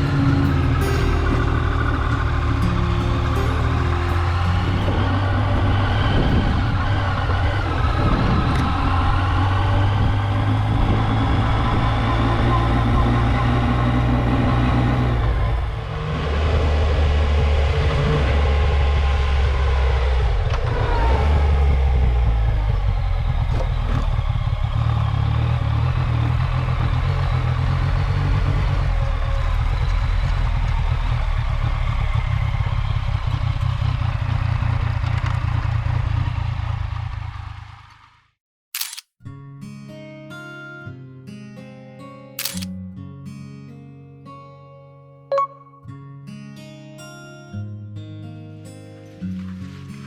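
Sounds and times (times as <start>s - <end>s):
motorcycle engine running: 0.0s - 38.4s.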